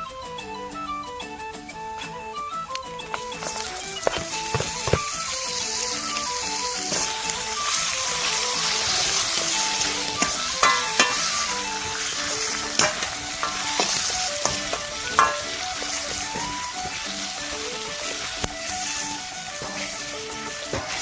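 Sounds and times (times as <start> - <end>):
plucked background music: 0.0 - 21.0
food sizzling in a wok: 2.6 - 21.0
utensil knocking against pan: 10.2 - 18.6, 19.5 - 21.0.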